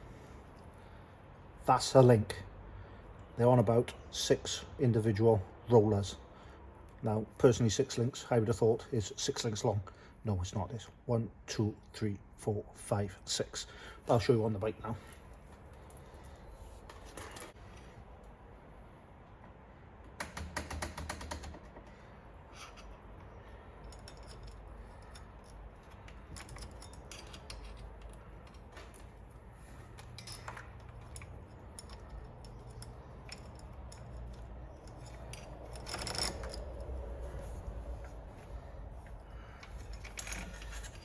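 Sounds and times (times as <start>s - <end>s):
bicycle chain clicking and rattling: 29.9s - 37.2s.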